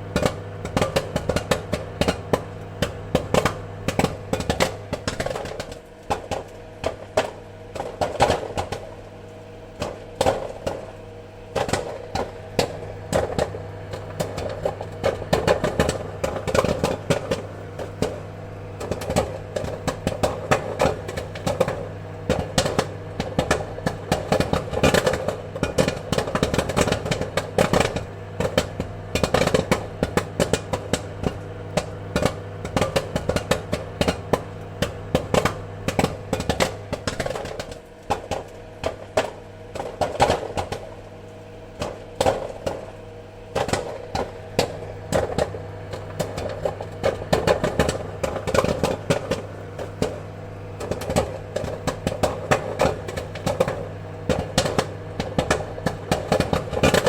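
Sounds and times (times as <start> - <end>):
popcorn kernels popping: 0.0 - 57.0
steady low hum: 0.0 - 57.0.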